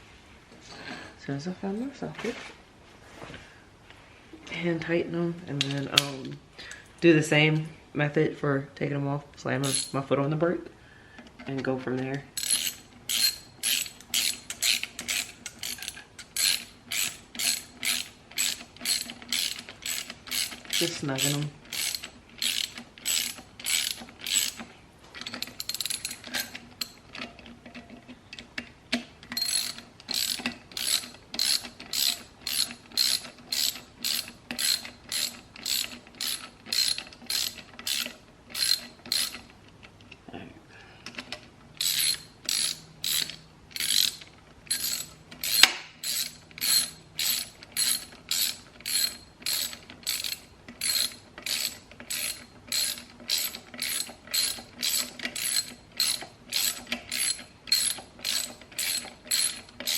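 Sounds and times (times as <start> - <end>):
socket ratchet clicking: 9.6 - 10.0, 12.4 - 24.6, 25.2 - 27.0, 29.3 - 39.5, 41.8 - 59.9.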